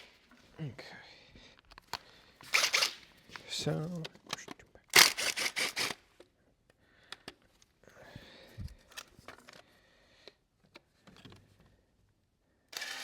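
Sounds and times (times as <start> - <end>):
rustling of parts: 1.5 - 9.8
ratchet wrench clicking: 2.5 - 3.0, 5.0 - 6.0.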